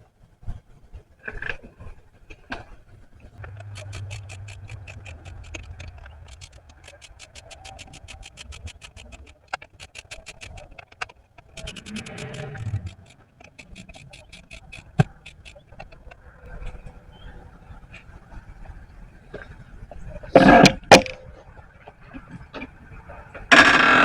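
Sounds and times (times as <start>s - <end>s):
low hum: 3.2s - 10.4s, 11.5s - 18.5s
ratchet wrench clicking: 3.4s - 10.8s, 11.5s - 15.7s.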